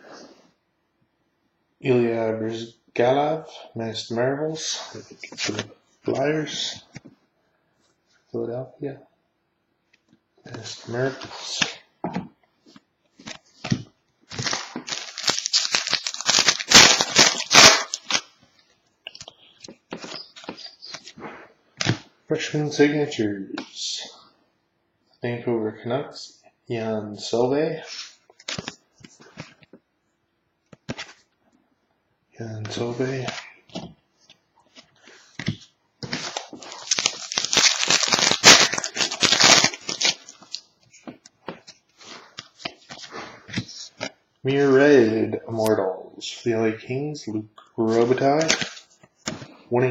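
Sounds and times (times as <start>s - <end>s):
foil wrapper crinkling and tearing: 14.3s - 18.3s, 36.0s - 40.7s, 48.0s - 48.9s.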